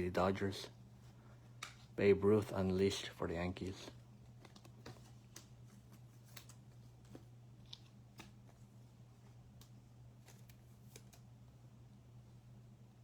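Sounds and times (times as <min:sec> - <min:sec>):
low electrical hum: 0:00.0 - 0:13.0
trading cards ticking and rustling: 0:03.6 - 0:08.5.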